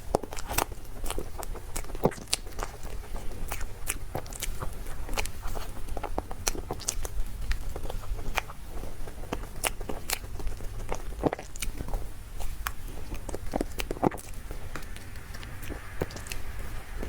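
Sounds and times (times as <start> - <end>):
person chewing close up: 0.0 - 17.0.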